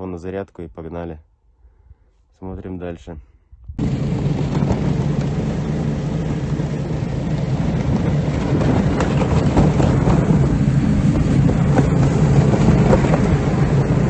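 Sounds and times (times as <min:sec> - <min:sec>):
vehicle engine drone: 0:03.8 - 0:14.0
rattling and knocks: 0:04.0 - 0:14.0.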